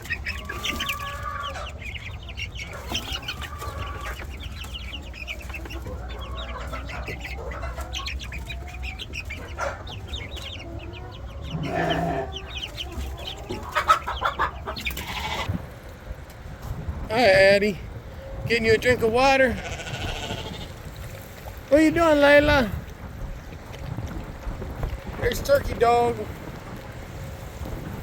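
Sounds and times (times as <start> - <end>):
loud long poultry call: 0.0 - 15.6, 19.2 - 21.0
poultry clucking and chirping: 0.0 - 28.0.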